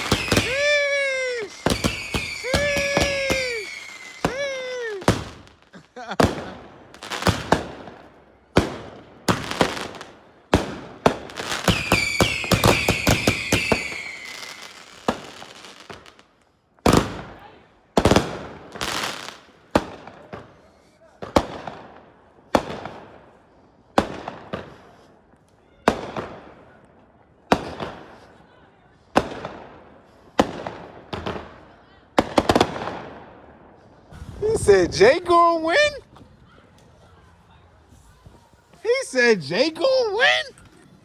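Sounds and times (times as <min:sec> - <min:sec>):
falling firework whistles: 0:00.0 - 0:05.5, 0:11.5 - 0:15.6, 0:34.1 - 0:34.6
fireworks bangs: 0:00.0 - 0:16.2, 0:27.5 - 0:28.2, 0:32.2 - 0:33.5, 0:34.1 - 0:37.0, 0:38.0 - 0:40.5
fireworks crackling: 0:00.0 - 0:17.3, 0:18.0 - 0:20.5, 0:32.2 - 0:41.0.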